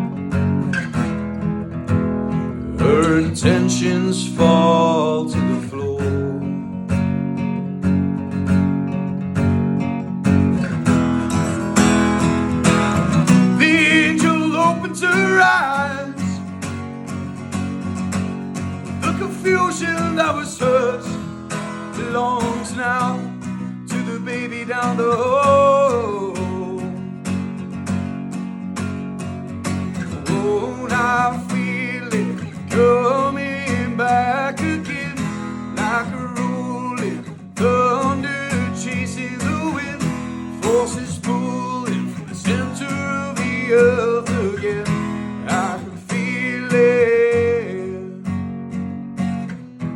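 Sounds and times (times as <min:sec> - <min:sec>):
acoustic guitar strumming: 0:00.0 - 0:49.9
person singing: 0:02.3 - 0:06.8, 0:13.2 - 0:16.5, 0:18.9 - 0:27.1, 0:30.1 - 0:48.3.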